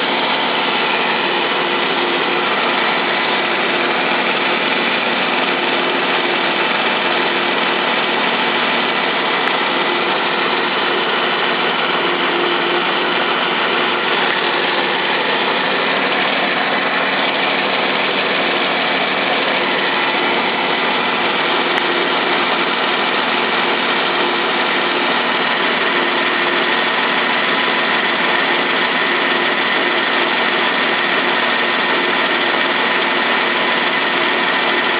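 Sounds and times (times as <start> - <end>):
car engine idling: 0.0 - 34.9.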